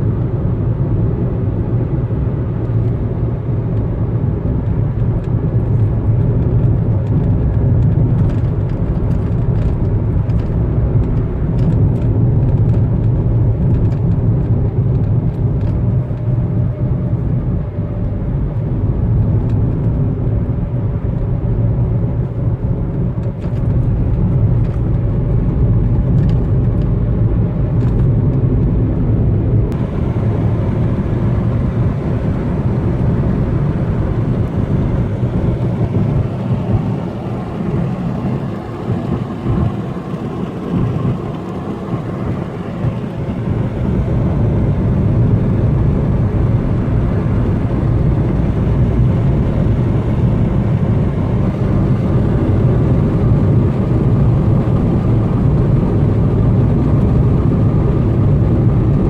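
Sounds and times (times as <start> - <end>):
car engine and tyre rumble: 0.0 - 59.0.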